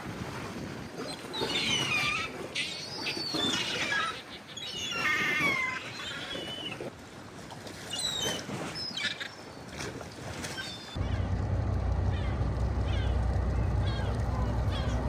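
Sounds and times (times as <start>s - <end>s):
wind and sea rushing: 0.0s - 15.0s
gulls calling: 10.6s - 15.0s.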